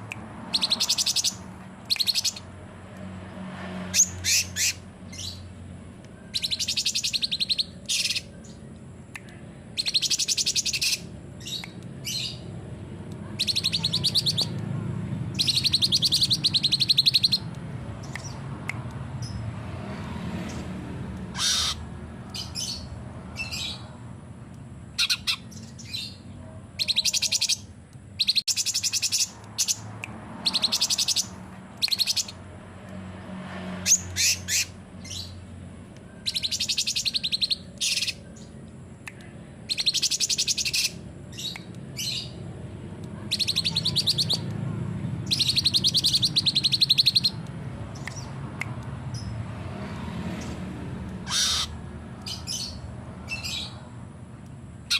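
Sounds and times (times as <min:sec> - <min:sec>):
songbird rattling song: 0:00.0 - 0:03.2, 0:03.9 - 0:33.1, 0:33.8 - 0:54.9
sharp bird chirps: 0:00.5 - 0:02.5, 0:06.2 - 0:12.4, 0:13.4 - 0:14.6, 0:15.3 - 0:18.5, 0:25.0 - 0:32.4, 0:36.1 - 0:42.4, 0:43.3 - 0:44.5, 0:45.2 - 0:49.4.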